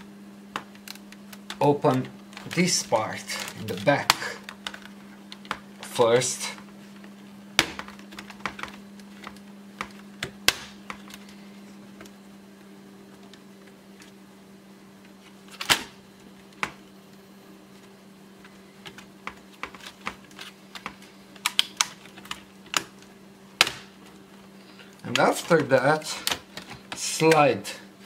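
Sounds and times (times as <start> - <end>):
steady low hum: 0.0 - 28.0
plastic case parts clicking: 18.8 - 23.0.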